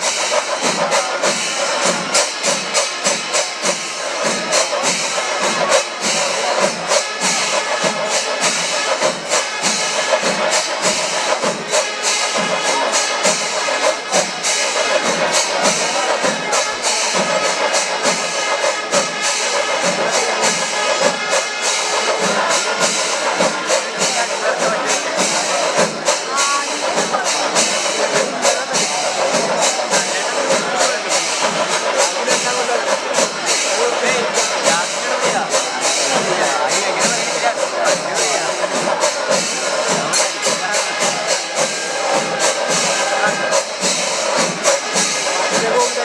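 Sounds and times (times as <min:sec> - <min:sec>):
drums and cymbals beating: 0:00.0 - 0:46.0
wind instrument held notes: 0:00.0 - 0:46.0.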